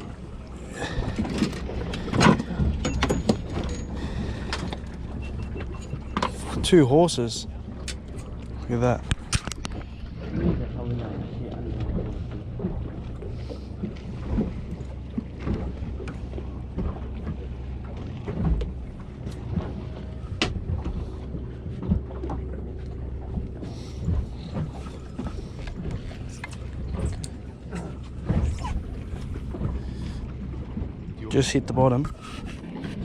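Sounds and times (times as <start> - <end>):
boat engine rumble: 0.0 - 33.0
water noise: 0.0 - 33.0
wind: 0.0 - 33.0
knocks and clicks of gear: 1.0 - 6.6, 7.8 - 9.9, 15.4 - 28.5.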